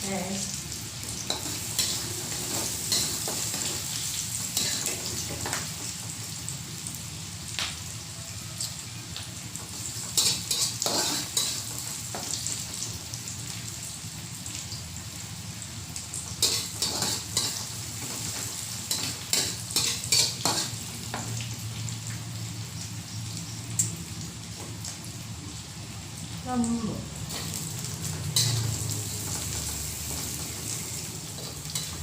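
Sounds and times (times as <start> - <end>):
food sizzling in hot oil: 0.0 - 32.0
spatula scraping a pan: 10.2 - 11.7, 16.4 - 17.6.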